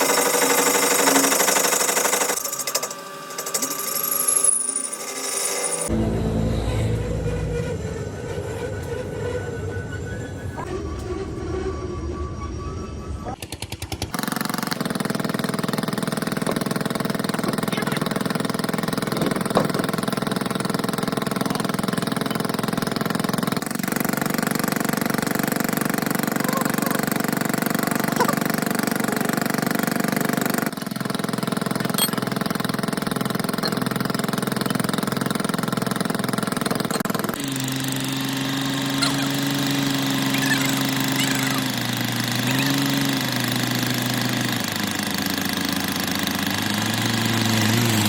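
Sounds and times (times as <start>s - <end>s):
workshop machine droning hum: 0.0s - 13.5s, 36.2s - 48.0s
lower stronger hum: 5.9s - 13.3s.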